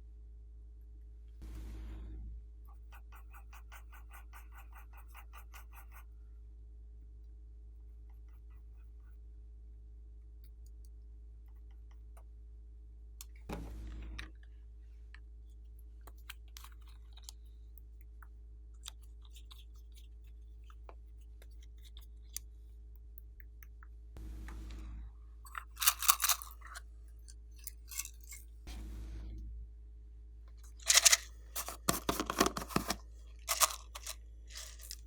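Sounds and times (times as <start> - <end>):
rustling: 30.6 - 35.0.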